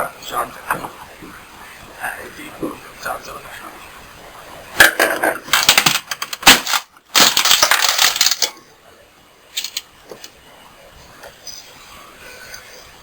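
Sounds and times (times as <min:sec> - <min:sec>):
small hard objects clattering: 0:04.8 - 0:08.6, 0:09.6 - 0:10.3.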